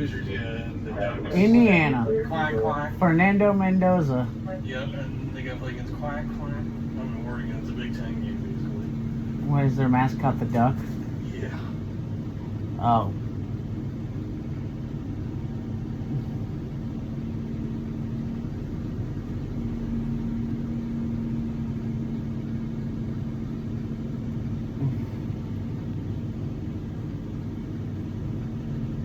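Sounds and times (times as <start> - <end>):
low rumble with mechanical hum: 0.0 - 29.0.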